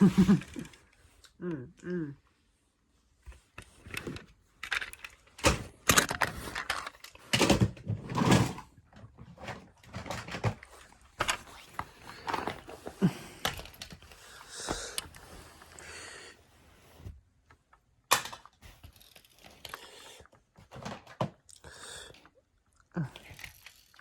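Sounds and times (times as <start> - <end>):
toy cars clicking and rattling: 0.0 - 1.0, 3.6 - 8.6, 9.4 - 15.7, 18.1 - 21.6, 23.0 - 24.0.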